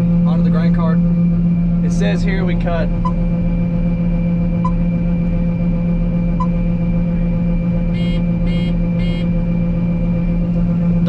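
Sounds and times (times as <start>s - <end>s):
combine harvester humming: 0.0s - 11.0s
short electronic beeps: 8.0s - 9.3s.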